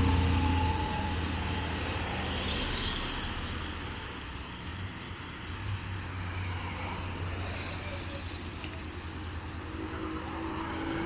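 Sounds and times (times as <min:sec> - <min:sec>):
road noise: 0:00.0 - 0:11.0
vehicle engine running: 0:00.0 - 0:11.0.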